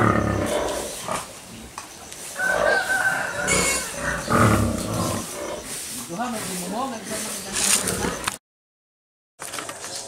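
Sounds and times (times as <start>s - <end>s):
pigs grunting: 0.0s - 1.8s, 2.4s - 8.3s
rooster crowing: 2.4s - 4.3s.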